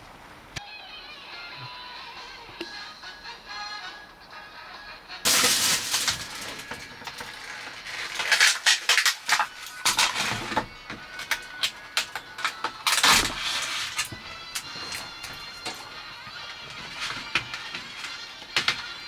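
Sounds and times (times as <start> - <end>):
rustling and clicks of handled objects: 5.3 - 19.0.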